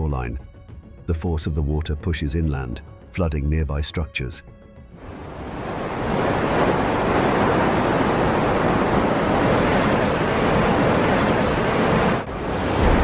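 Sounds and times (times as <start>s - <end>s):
sea waves crashing onto shore: 5.0s - 13.0s.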